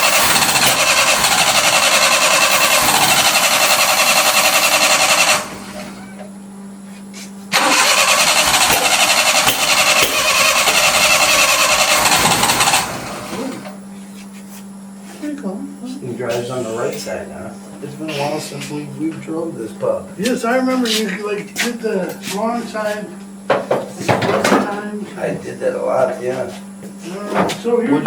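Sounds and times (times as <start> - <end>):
engine cranking on starter: 0.0 - 6.2, 7.5 - 13.8.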